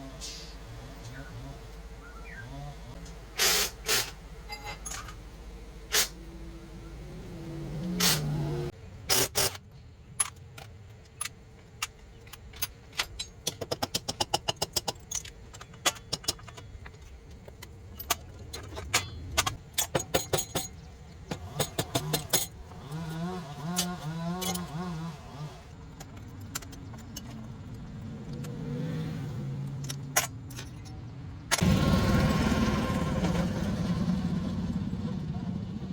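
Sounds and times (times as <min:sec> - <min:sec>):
metal tools clinking: 0:04.5 - 0:05.2, 0:10.2 - 0:20.9, 0:23.8 - 0:24.8, 0:25.9 - 0:28.6, 0:29.6 - 0:31.6.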